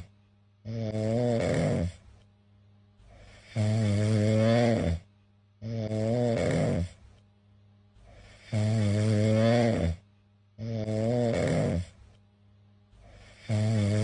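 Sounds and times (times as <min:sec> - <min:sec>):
faint breaths: 0:00.0 - 0:12.3, 0:12.9 - 0:14.0
cat snoring: 0:00.7 - 0:02.0, 0:03.1 - 0:07.0, 0:08.0 - 0:10.0, 0:10.6 - 0:12.0, 0:13.0 - 0:14.0.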